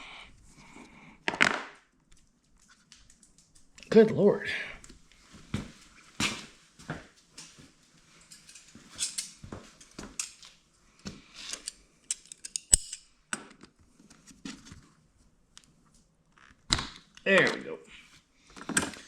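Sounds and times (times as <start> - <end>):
hand tool clicks and scrapes: 11.4 - 13.0.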